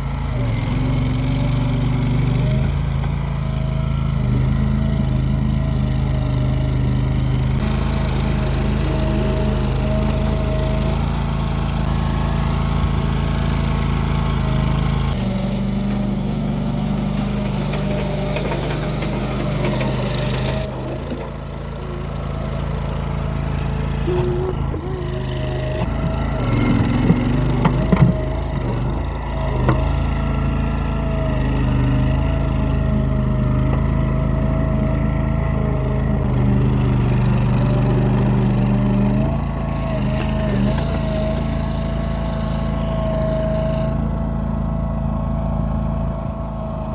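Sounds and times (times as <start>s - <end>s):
bulldozer engine running: 0.0s - 46.9s
constant whine: 15.1s - 29.9s.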